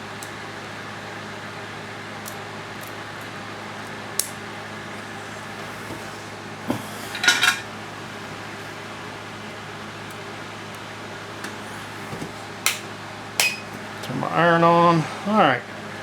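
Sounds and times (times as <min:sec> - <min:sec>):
fan hum: 0:02.6 - 0:16.0
metal parts clinking on workbench: 0:06.9 - 0:07.7.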